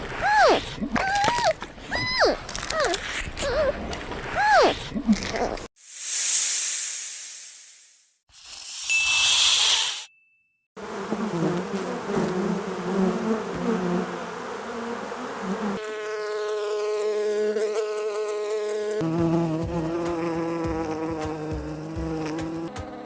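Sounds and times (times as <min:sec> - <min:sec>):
insect-like buzzing: 0:10.8 - 0:23.0.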